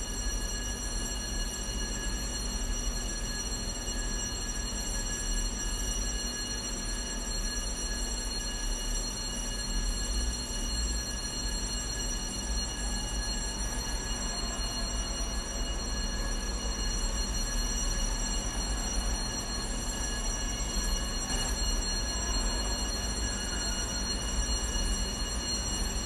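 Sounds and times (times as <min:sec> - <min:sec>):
electric fire alarm bell ringing: 0:00.0 - 0:26.0.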